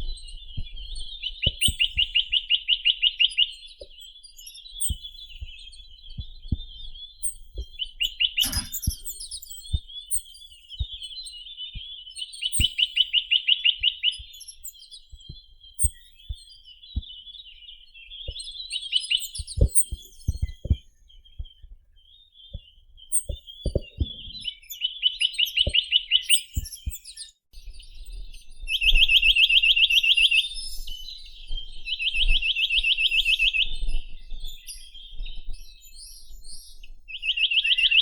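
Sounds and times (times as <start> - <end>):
soft chattering bird notes: 7.2 - 10.4
sharp click: 8.4 - 9.4.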